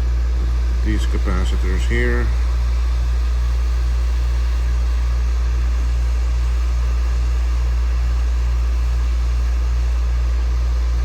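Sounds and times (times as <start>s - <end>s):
hot air rework station drone: 0.0s - 11.0s.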